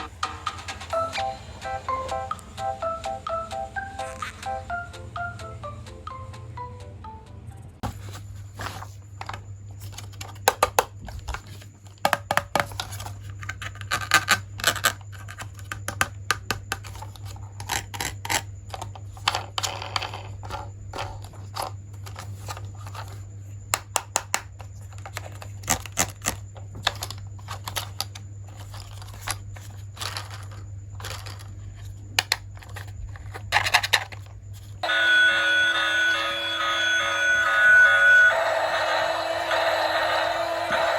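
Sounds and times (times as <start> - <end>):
music with steady tones: 0.0 - 7.8
toy packaging scraping and tearing: 12.6 - 16.0, 16.8 - 23.2, 24.8 - 34.8.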